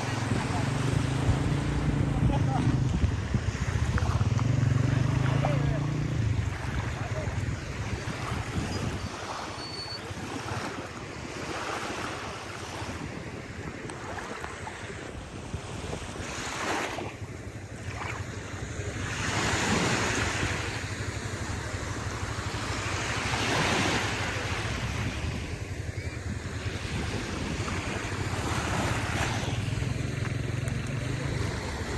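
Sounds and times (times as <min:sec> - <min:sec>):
wind noise on microphone: 0:00.0 - 0:11.3, 0:12.3 - 0:17.1, 0:23.5 - 0:30.0
waves washing onto shore: 0:00.0 - 0:31.9.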